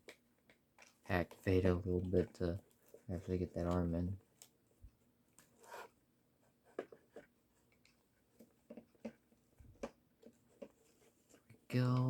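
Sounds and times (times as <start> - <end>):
light clicks of plastic parts: 0.0 - 5.5.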